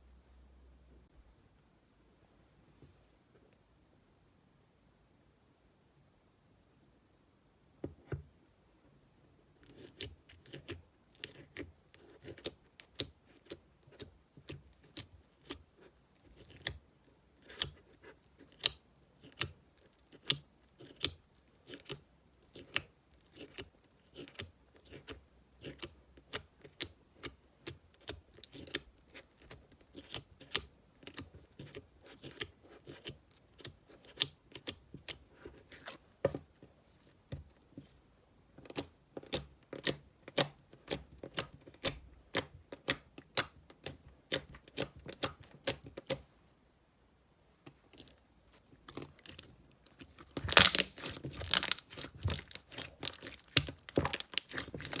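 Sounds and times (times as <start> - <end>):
slime crackling and popping: 48.9 - 55.0.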